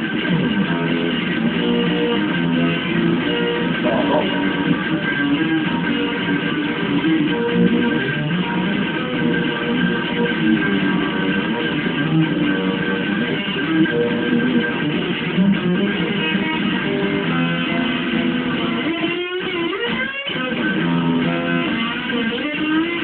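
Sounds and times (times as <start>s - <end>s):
electric guitar through amplifier: 0.0s - 23.0s.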